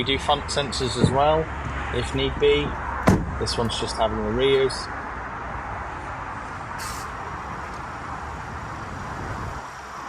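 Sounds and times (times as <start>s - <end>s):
traffic rumble: 0.0s - 10.0s
short high hiss: 6.8s - 7.2s.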